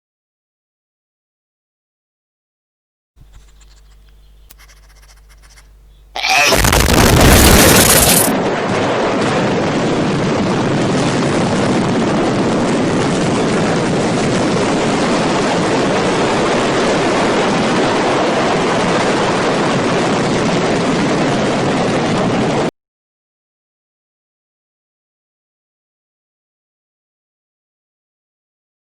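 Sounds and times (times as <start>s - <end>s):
explosion blast and roar: 6.2s - 22.7s.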